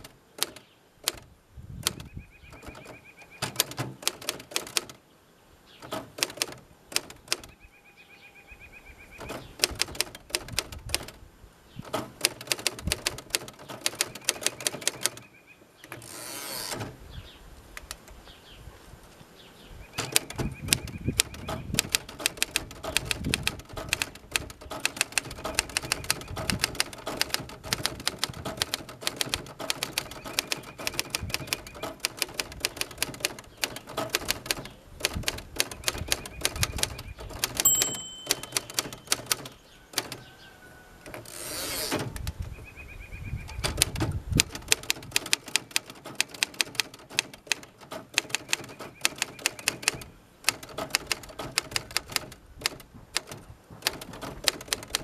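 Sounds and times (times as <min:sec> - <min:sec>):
manual typewriter typing: 0:00.0 - 0:05.0, 0:05.8 - 0:07.5, 0:09.2 - 0:11.2, 0:11.8 - 0:15.2, 0:20.0 - 0:40.2, 0:41.1 - 0:42.4, 0:43.5 - 0:55.0
typewriter carriage return zip: 0:01.8 - 0:05.0, 0:05.8 - 0:07.5, 0:09.2 - 0:11.2, 0:11.8 - 0:15.2, 0:15.9 - 0:17.0, 0:20.0 - 0:40.2, 0:41.1 - 0:42.3, 0:43.6 - 0:55.0
typewriter margin bell ding: 0:37.5 - 0:39.5.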